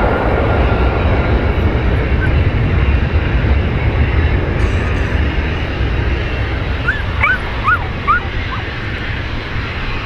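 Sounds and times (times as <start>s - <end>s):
wind rumbling on microphone: 0.0s - 10.0s
animal yelping cries: 6.6s - 9.4s.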